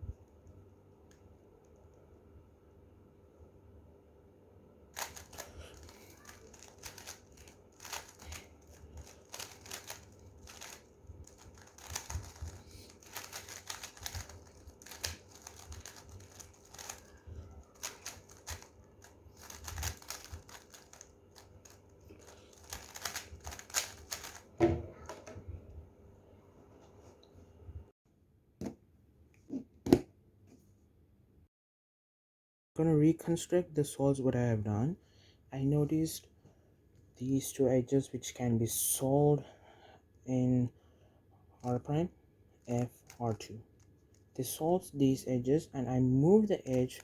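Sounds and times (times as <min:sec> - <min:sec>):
speed cube clicking: 0:05.0 - 0:24.4.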